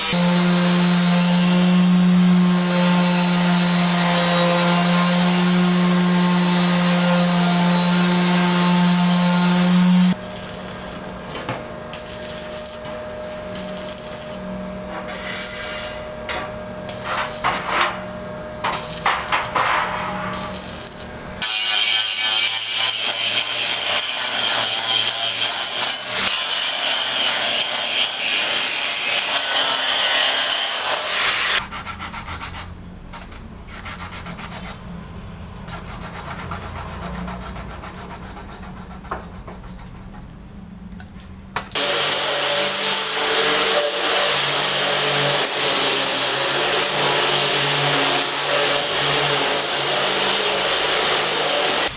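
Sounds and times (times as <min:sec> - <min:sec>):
harsh scraping tool noise: 0:00.0 - 0:34.8, 0:41.8 - 0:51.9.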